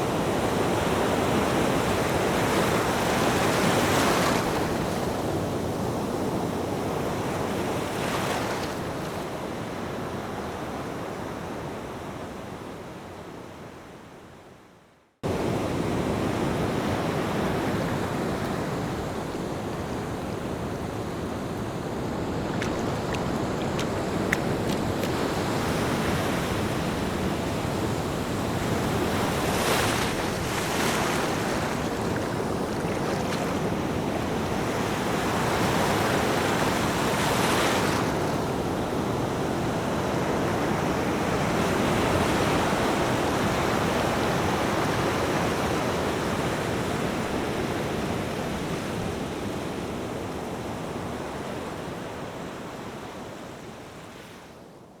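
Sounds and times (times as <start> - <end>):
ocean waves breaking: 15.3 - 43.6.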